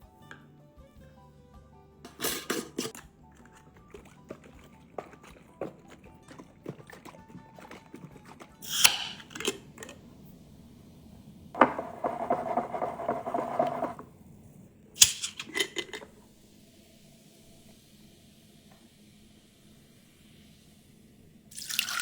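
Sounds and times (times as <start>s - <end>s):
utensils and dishes clinking: 2.1s - 10.0s, 11.6s - 14.1s, 15.0s - 16.2s.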